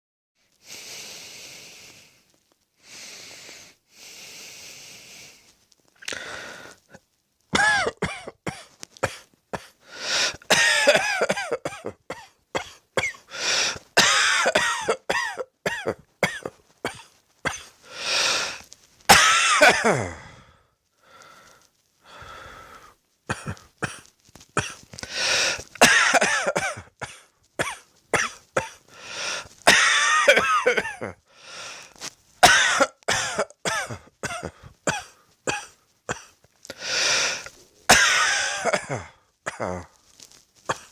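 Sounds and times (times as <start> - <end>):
person breathing softly: 0.5 - 7.0, 9.8 - 10.5, 13.3 - 14.0, 17.7 - 18.8, 19.9 - 23.0, 24.9 - 25.8, 28.8 - 29.6, 31.2 - 32.2, 34.4 - 35.5, 36.6 - 37.9
person coughing hard: 7.6 - 17.7, 18.3 - 20.3, 23.3 - 24.0, 24.6 - 28.8, 29.6 - 31.2, 32.4 - 39.9, 40.7 - 40.9.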